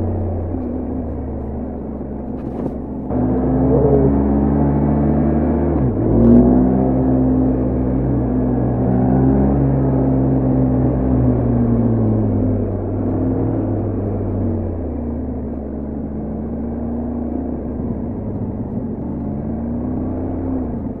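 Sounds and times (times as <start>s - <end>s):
motorcycle engine running: 5.5s - 21.0s.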